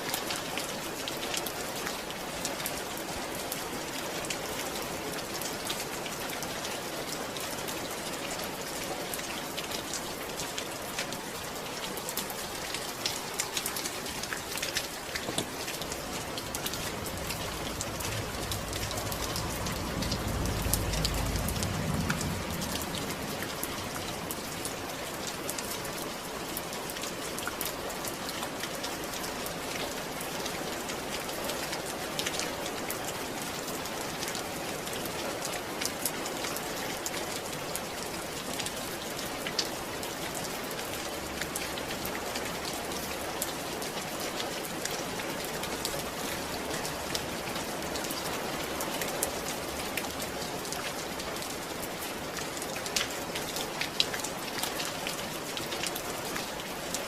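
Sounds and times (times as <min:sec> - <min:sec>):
steady rain falling: 0:00.0 - 0:57.0
low rumble: 0:15.9 - 0:24.3.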